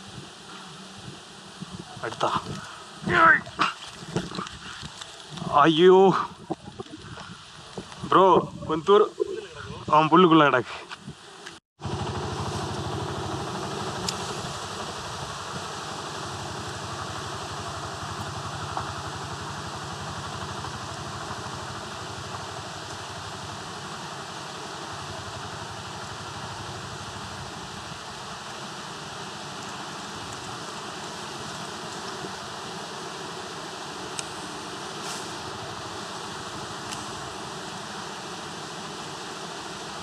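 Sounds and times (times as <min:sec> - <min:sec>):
engine running with low pulsing: 0:11.8 - 0:40.0.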